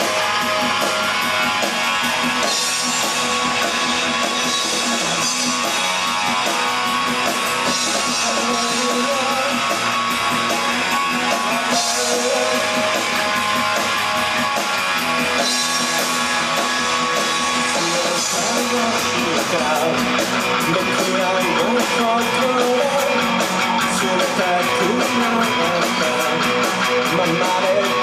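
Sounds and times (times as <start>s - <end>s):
rock band playing: 0.0s - 28.0s.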